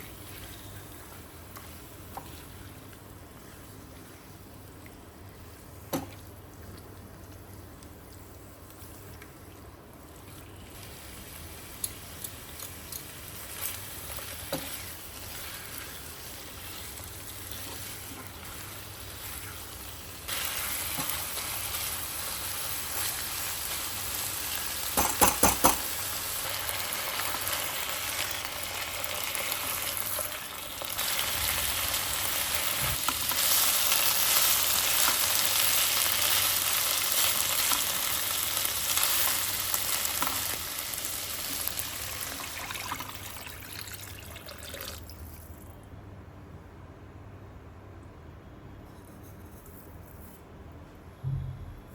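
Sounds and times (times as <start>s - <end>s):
oil sizzling in a pan: 8.1s - 45.1s
utensil knocking on pan: 25.0s - 25.9s.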